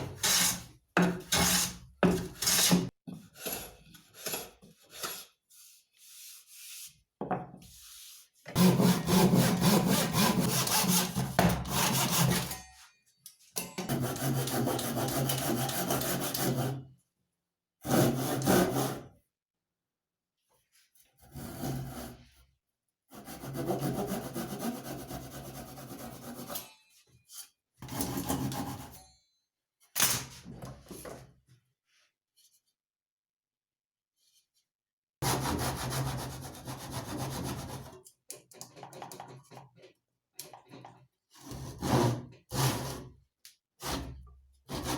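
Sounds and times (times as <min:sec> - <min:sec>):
wood being sawn: 0:08.6 - 0:12.4.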